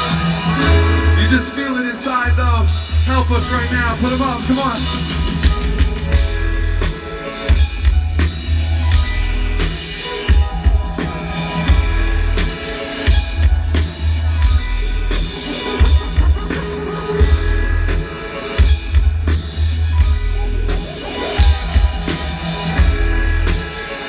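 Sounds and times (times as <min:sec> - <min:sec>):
loud live electronic music: 0:00.0 - 0:24.0.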